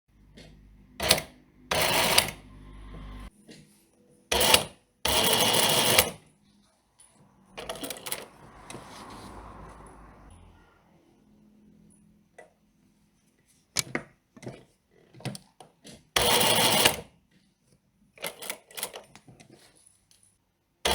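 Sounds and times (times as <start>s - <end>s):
sewing machine stitching: 0.4s - 3.3s, 4.3s - 6.3s, 7.6s - 10.1s, 15.9s - 17.1s.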